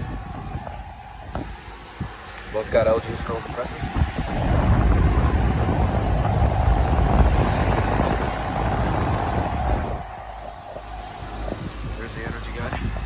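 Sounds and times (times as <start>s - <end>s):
air conditioner low rumble: 0.0s - 13.0s
fan airflow: 0.0s - 13.0s.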